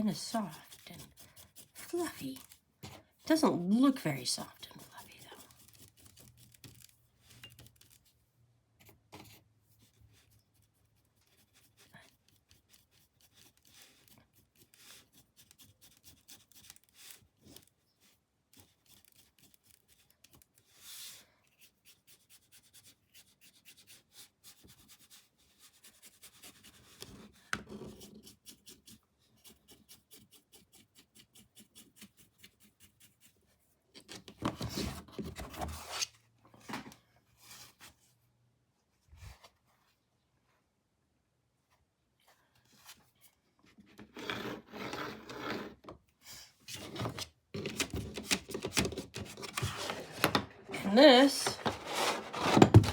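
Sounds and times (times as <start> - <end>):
paintbrush scratching on canvas: 0.0 - 2.6, 3.3 - 6.9, 18.0 - 33.7
handling noise: 49.4 - 52.9.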